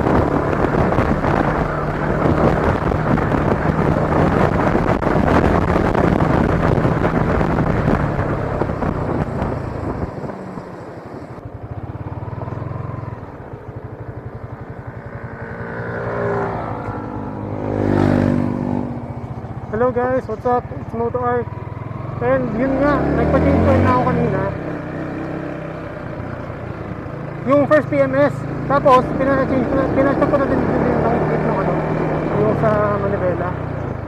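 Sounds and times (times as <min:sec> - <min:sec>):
wind rushing over microphone: 0:00.0 - 0:27.8
motorcycle engine running: 0:00.0 - 0:34.0.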